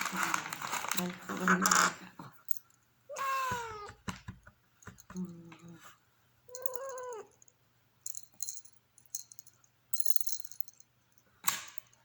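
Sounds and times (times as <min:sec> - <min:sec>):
cat meowing: 0:03.1 - 0:04.0, 0:06.5 - 0:07.4
high jingling rattle: 0:06.5 - 0:07.2, 0:08.0 - 0:10.9.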